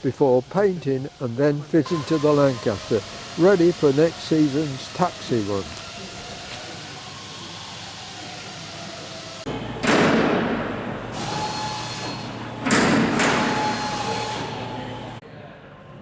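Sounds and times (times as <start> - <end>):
loud thumps: 9.5 - 14.2.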